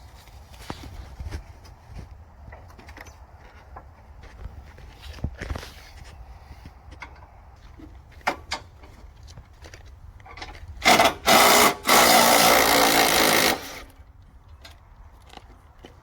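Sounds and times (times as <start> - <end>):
small power tool motor: 10.8 - 14.0.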